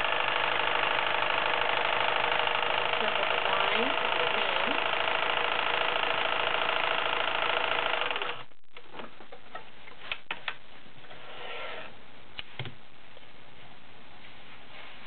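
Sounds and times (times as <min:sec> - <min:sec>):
sewing machine running fast: 0:00.0 - 0:08.5.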